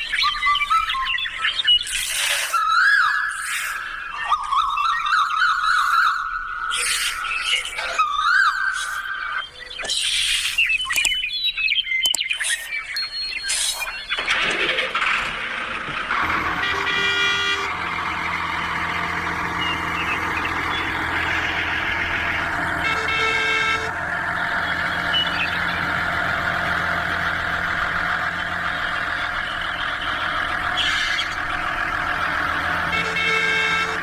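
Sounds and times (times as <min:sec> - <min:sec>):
tractor motor running: 0:00.0 - 0:34.0
tractor horn tooting: 0:16.1 - 0:34.0.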